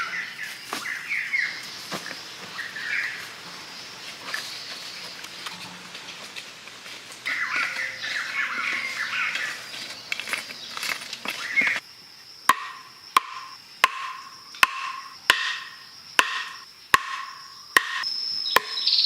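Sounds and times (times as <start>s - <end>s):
high-pitched hiss: 0.0s - 19.0s
high squiggly chirping calls: 7.2s - 10.8s, 12.5s - 19.0s
sharp knocks: 12.5s - 18.0s, 18.6s - 18.8s.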